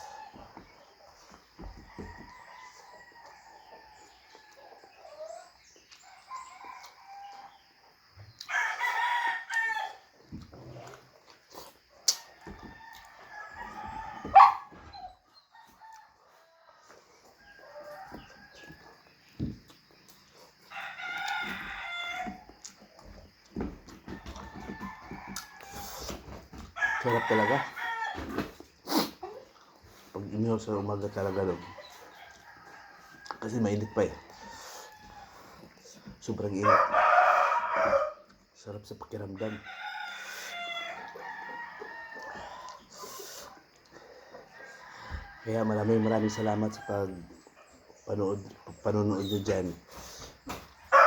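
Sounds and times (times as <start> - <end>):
chicken calls: 0.0 - 38.5, 39.2 - 51.0
roosters crowing: 0.0 - 38.5, 39.1 - 51.0.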